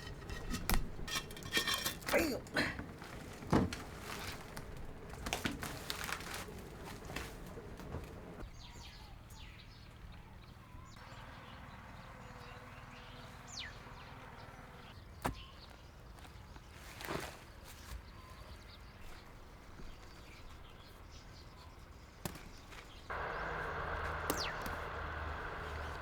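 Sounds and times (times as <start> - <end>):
knocks and clatter: 0.0 - 8.4
birds chirping: 0.0 - 16.8, 17.8 - 26.0.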